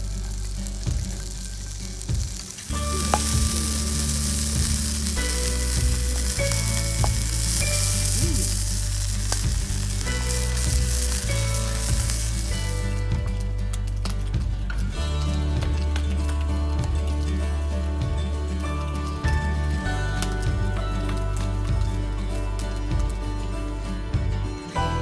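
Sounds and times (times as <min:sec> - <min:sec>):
food sizzling in a pan: 0:00.0 - 0:14.3
background music: 0:00.0 - 0:25.0.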